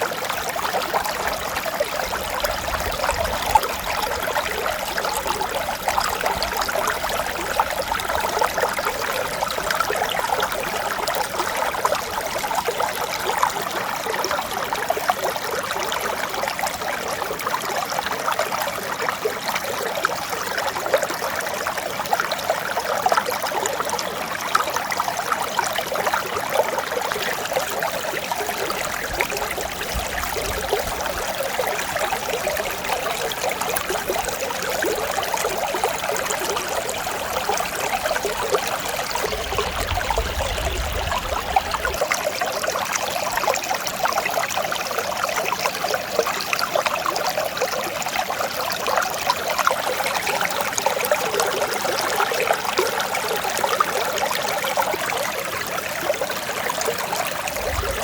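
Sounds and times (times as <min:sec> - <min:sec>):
stream babbling: 0:00.0 - 0:58.0
faint low rumble: 0:38.3 - 0:42.1.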